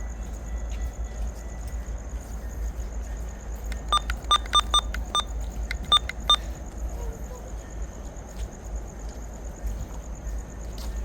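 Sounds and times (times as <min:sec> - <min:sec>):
short high electronic beeps: 0:03.8 - 0:06.4.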